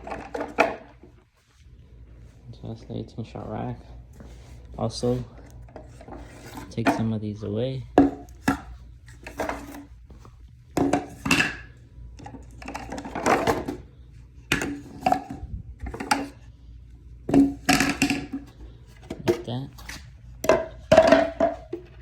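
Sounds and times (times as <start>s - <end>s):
hard tubes knocking and clattering: 17.3s - 19.6s, 20.4s - 22.0s.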